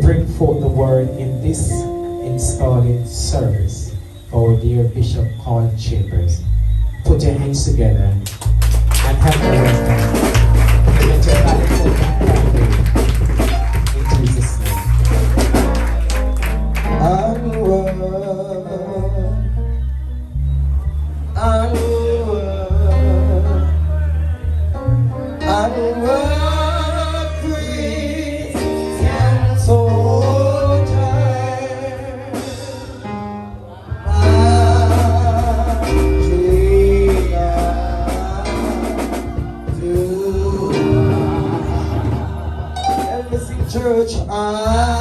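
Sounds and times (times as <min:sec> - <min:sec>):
gospel band with bass and guitar: 0:00.0 - 0:45.0
person singing: 0:25.4 - 0:33.0, 0:33.6 - 0:45.0.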